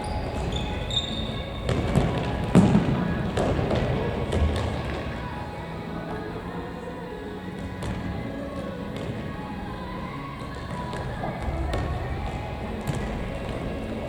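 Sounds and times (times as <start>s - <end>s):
background music: 0.0s - 14.0s
players' voices: 0.0s - 14.0s
ball thuds on hall floor: 0.3s - 5.3s.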